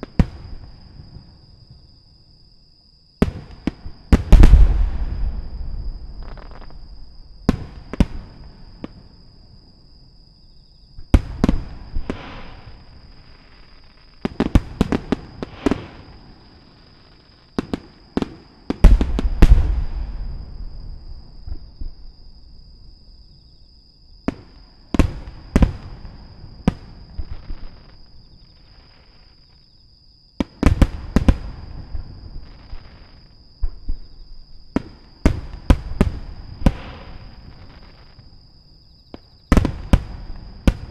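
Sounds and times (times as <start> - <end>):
fireworks bursting: 3.2 - 9.1, 11.2 - 22.5, 39.1 - 40.9
echoing rumble: 4.4 - 7.4.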